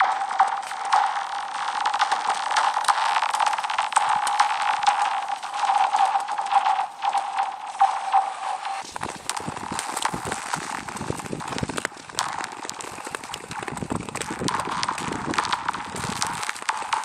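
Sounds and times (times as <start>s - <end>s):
skate blades clicking on ice: 0.0s - 17.0s.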